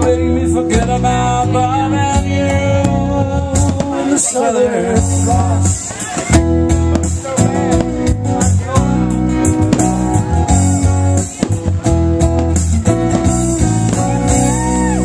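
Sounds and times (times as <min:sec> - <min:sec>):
band music with acoustic guitars: 0:00.0 - 0:15.0.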